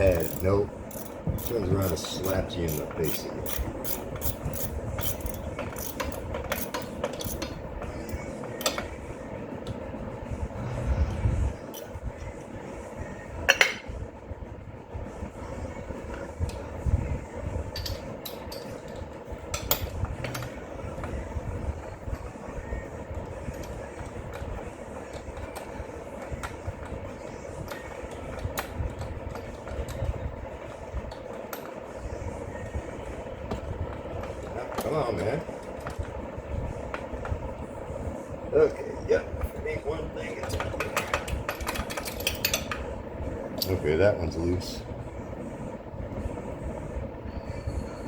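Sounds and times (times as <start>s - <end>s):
hand tools clanking on metal: 0.0s - 7.6s
steady rumbling background: 0.0s - 31.2s, 42.6s - 48.0s.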